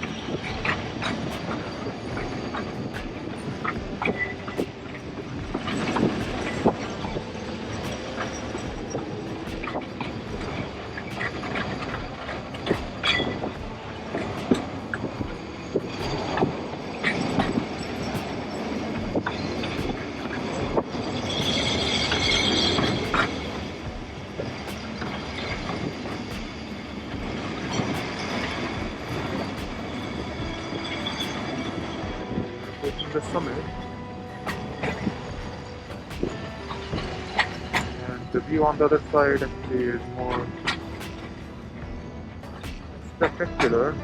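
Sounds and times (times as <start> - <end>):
high-pitched squeal: 0.0 - 44.0
tramcar rumbling on rails: 0.0 - 44.0.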